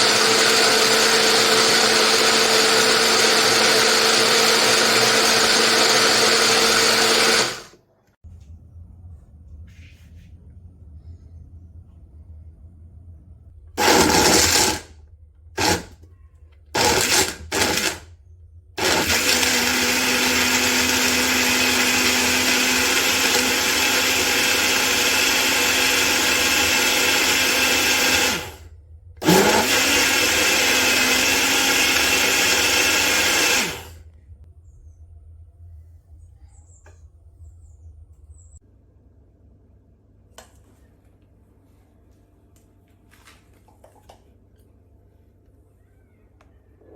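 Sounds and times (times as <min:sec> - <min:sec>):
personal blender running: 0:00.0 - 0:07.8, 0:13.8 - 0:14.9, 0:15.6 - 0:16.0, 0:16.7 - 0:18.1, 0:18.8 - 0:34.0.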